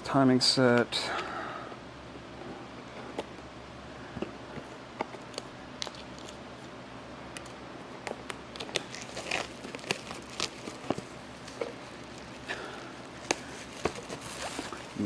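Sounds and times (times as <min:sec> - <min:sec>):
plastic packaging crinkling: 0:08.0 - 0:12.4.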